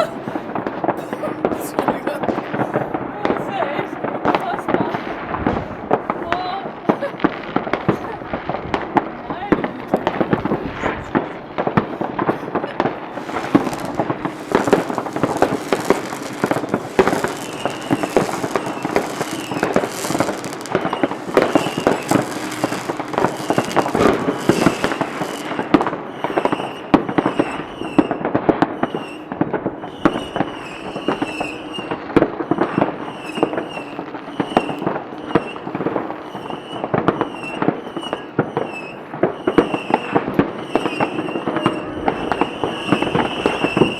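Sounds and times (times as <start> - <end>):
fireworks bangs and crackles: 0.0 - 43.9
high-pitched firework whistles: 11.8 - 43.9.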